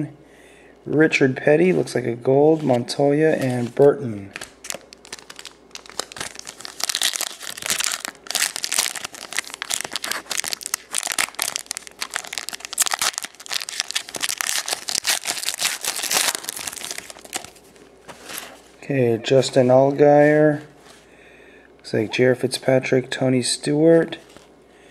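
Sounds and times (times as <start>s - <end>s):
plastic wrapper crinkling and tearing: 4.3s - 18.6s.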